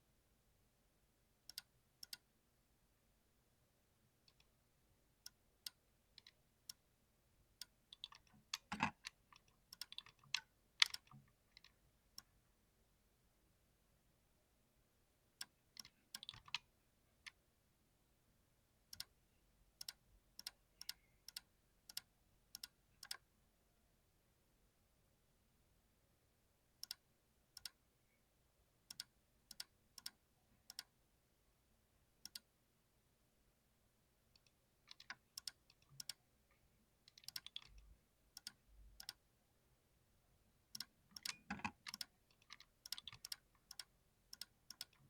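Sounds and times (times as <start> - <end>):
mechanical keyboard typing: 7.9 - 11.7, 15.8 - 16.6, 37.1 - 37.8, 40.8 - 45.0.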